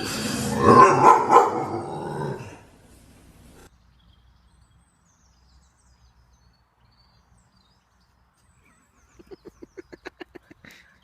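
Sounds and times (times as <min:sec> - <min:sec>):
small birds chirping: 0:03.5 - 0:11.0.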